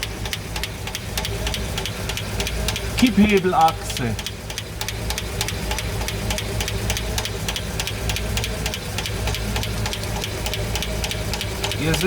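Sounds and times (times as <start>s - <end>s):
engine idling: 0.0s - 12.0s
fast even valvetrain ticking: 0.0s - 12.0s.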